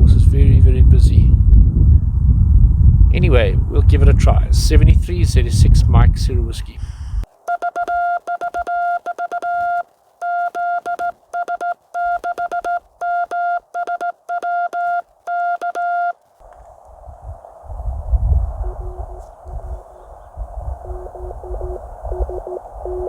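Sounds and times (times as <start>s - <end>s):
morse code beeps: 7.5s - 16.2s
radio receiver hiss: 18.3s - 23.0s.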